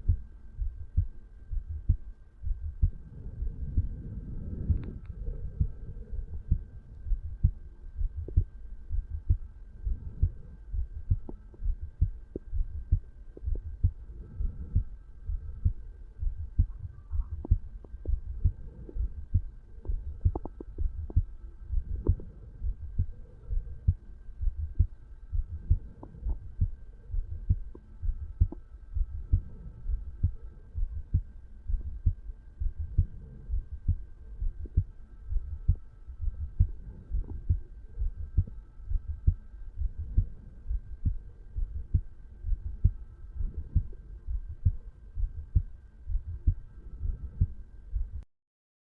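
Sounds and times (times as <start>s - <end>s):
heartbeat lub-dub: 0.0s - 48.3s.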